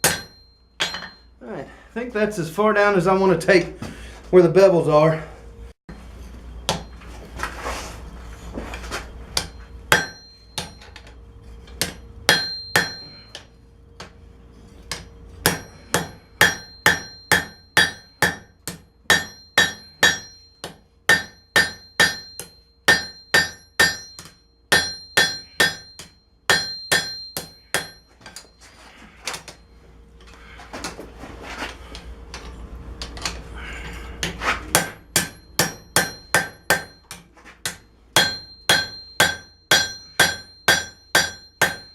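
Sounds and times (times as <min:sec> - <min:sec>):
hammer striking steel on anvil: 0:00.0 - 0:01.3, 0:09.4 - 0:11.1, 0:11.8 - 0:14.1, 0:14.9 - 0:28.6, 0:34.2 - 0:41.9.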